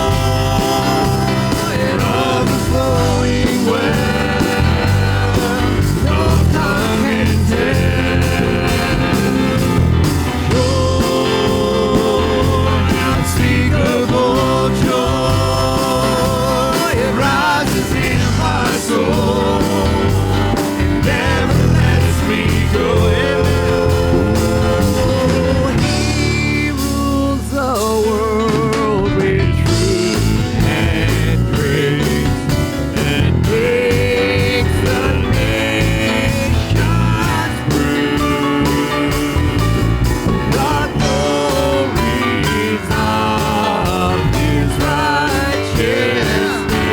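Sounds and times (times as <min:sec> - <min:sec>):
worship band playing: 0:00.0 - 0:46.9.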